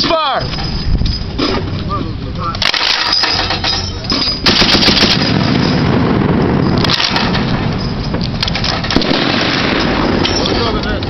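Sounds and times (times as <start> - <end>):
machine gun firing bursts: 2.6 - 3.7, 4.4 - 7.7, 8.6 - 10.3.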